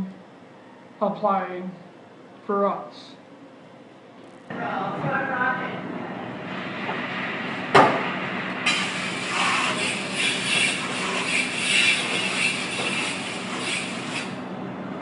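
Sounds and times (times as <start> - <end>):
sharp knock: 7.7 - 8.0.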